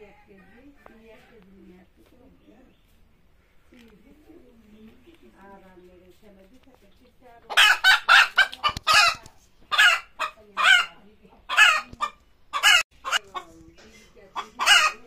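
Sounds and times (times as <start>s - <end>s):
hen squawking: 7.5s - 13.4s, 14.3s - 15.0s.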